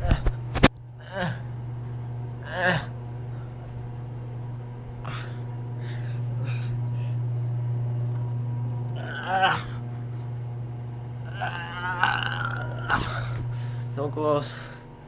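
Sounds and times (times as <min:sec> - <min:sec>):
steady low hum: 0:00.0 - 0:15.0
person grunting: 0:01.0 - 0:01.4, 0:02.4 - 0:02.9, 0:05.0 - 0:05.4, 0:09.0 - 0:09.8, 0:11.3 - 0:13.4
person breathing heavily: 0:05.0 - 0:07.2.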